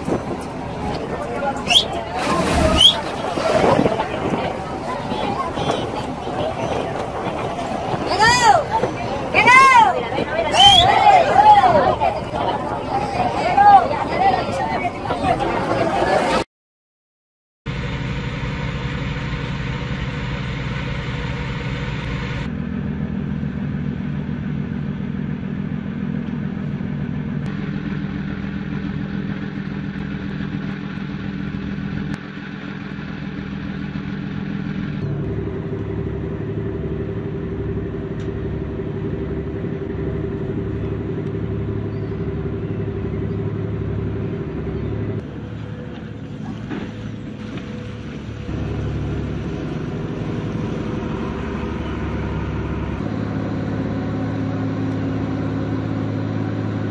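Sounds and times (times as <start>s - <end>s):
boat engine humming: 0.0s - 16.4s, 17.7s - 56.9s
low pulsing throb: 17.7s - 56.9s.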